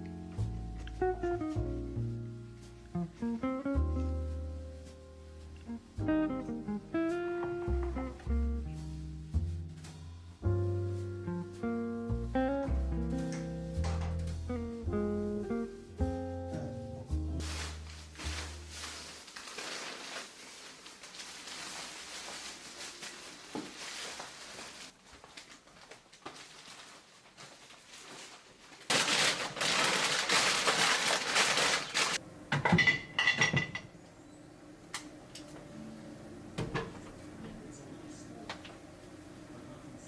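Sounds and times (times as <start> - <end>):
dishes and cutlery clinking: 13.8 - 14.4, 32.6 - 33.9.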